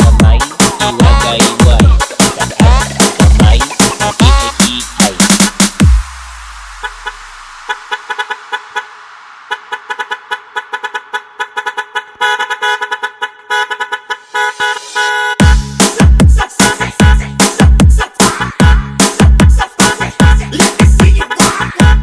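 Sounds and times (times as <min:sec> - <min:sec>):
swoosh: 0:00.0 - 0:11.4
heavy bass and drums: 0:00.0 - 0:11.5, 0:15.4 - 0:22.0
truck horn stabs: 0:09.6 - 0:16.0, 0:16.6 - 0:17.4.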